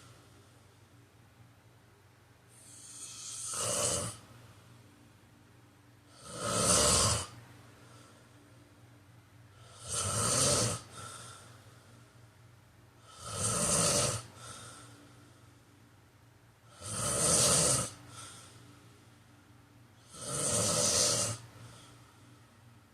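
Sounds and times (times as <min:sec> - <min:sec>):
person snoring: 0:02.5 - 0:04.2, 0:06.1 - 0:07.4, 0:09.6 - 0:11.6, 0:13.0 - 0:15.0, 0:16.7 - 0:18.6, 0:20.0 - 0:22.0.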